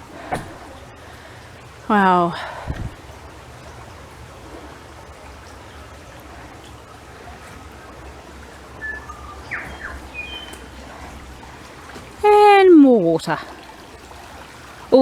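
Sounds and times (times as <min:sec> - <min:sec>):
bird whistling calls: 0:08.8 - 0:11.2.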